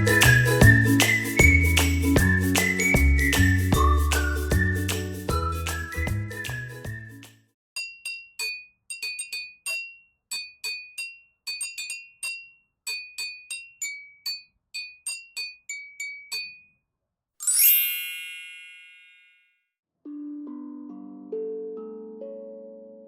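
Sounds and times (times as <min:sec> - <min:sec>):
small glass chime tapped: 0:07.8 - 0:16.8
shimmer of high chime tones: 0:17.4 - 0:19.6.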